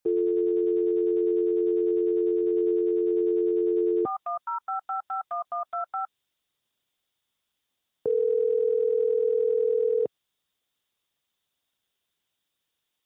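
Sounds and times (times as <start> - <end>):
telephone dial tone: 8.1 - 10.1.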